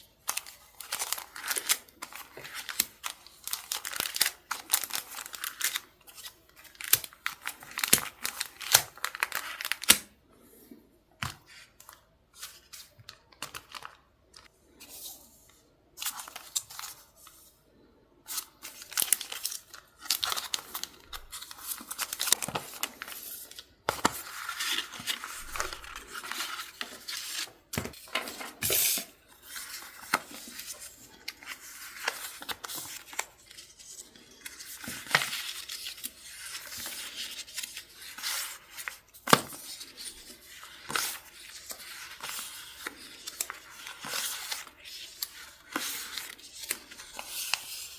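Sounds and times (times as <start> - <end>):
paper rustling and tearing: 18.3 - 47.9.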